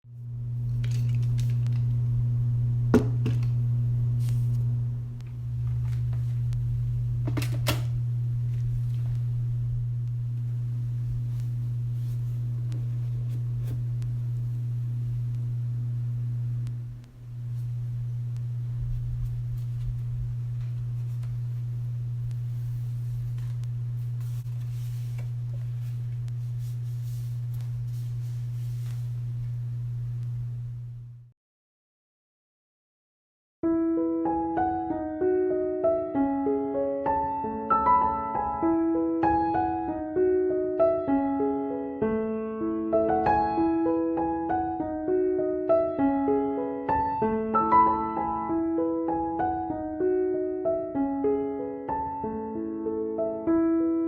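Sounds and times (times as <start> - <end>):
steady low hum: 0.1 - 31.3.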